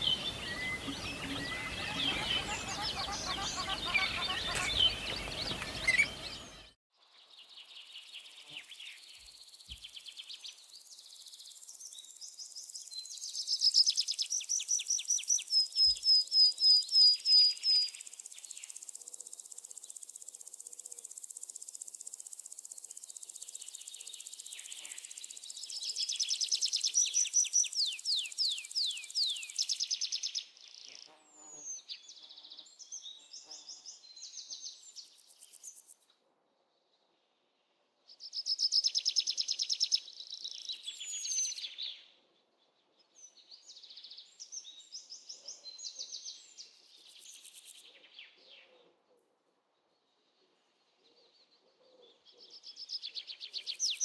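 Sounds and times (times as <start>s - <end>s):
bird trills: 0.0s - 6.7s
songbirds chirping: 0.0s - 18.9s, 23.6s - 35.9s, 49.8s - 54.0s.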